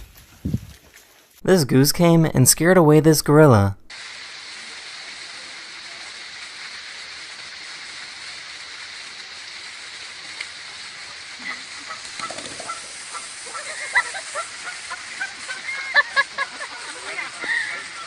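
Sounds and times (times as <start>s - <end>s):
steady background hiss: 0.0s - 18.0s
goose honking: 11.4s - 15.4s.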